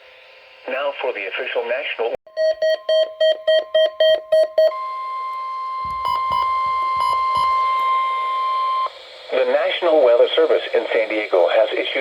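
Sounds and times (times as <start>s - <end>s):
steady alarm tone: 2.3s - 9.8s
quick electronic beeps: 5.8s - 7.8s.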